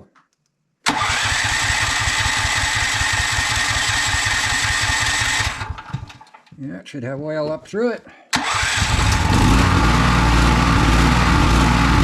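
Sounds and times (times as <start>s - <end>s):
generator engine cranking: 0.9s - 6.5s, 8.4s - 12.0s.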